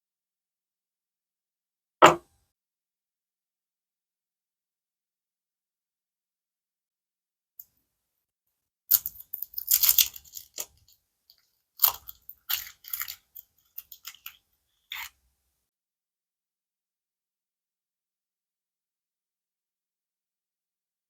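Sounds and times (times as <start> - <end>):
packaging wrapper crinkling: 8.9 - 15.1.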